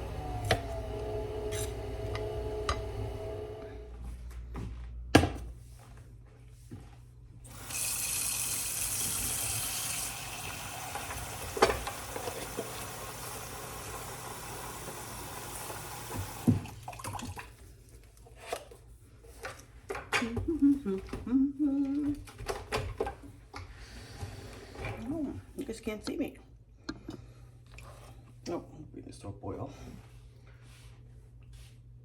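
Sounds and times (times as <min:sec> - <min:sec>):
tap water running into sink: 0:07.5 - 0:17.6.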